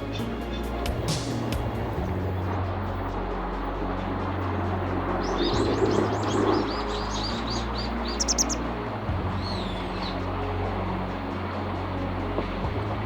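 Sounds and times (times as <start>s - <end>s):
steady low hum: 0.0s - 13.0s
small bird chirping: 5.2s - 8.7s.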